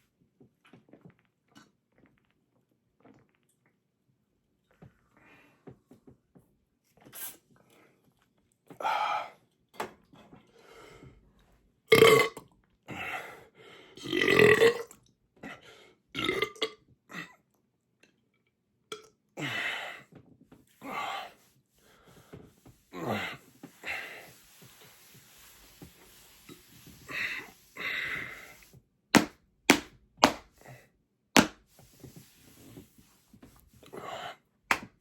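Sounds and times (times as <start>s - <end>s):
man belching: 11.9s - 12.4s.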